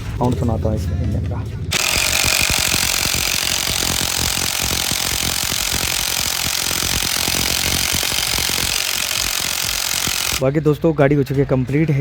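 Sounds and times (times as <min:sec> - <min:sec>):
rapid mechanical clatter: 0:01.7 - 0:10.4
scooter engine running: 0:01.7 - 0:10.4.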